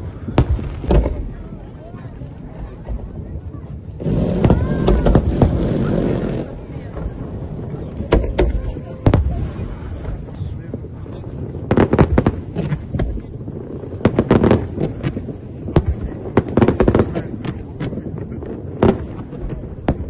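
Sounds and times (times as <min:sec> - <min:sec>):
fireworks bangs: 0:00.0 - 0:20.0.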